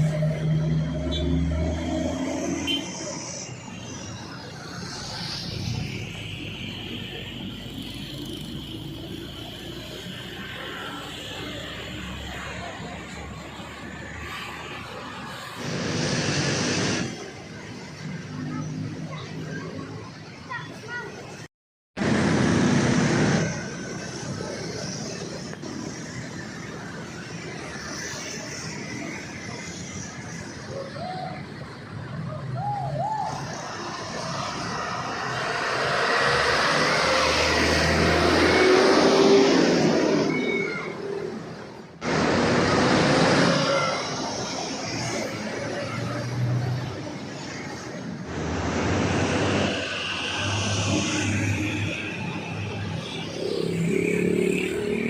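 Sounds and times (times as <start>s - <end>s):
road traffic noise: 0.0s - 55.0s.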